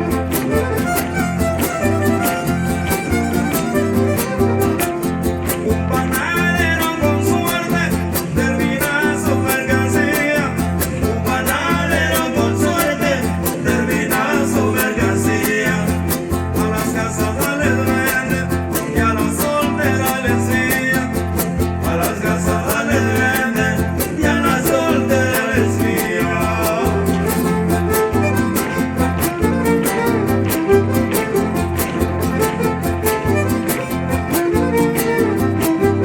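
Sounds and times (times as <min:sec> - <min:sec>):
violin melody: 0:00.0 - 0:05.3, 0:27.3 - 0:36.0
guitars strumming: 0:00.0 - 0:36.0.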